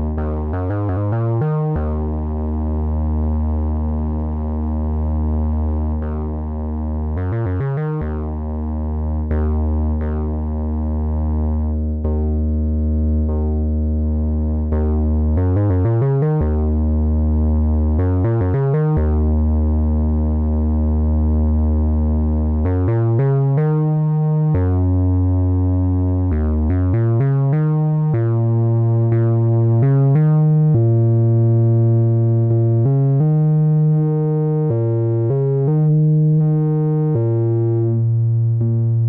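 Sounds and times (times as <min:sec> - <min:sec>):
bright synthesizer notes: 0:00.0 - 0:02.2, 0:07.1 - 0:08.4, 0:14.6 - 0:16.8, 0:17.9 - 0:19.3, 0:26.2 - 0:31.1
synthesizer bass line: 0:00.0 - 0:39.0.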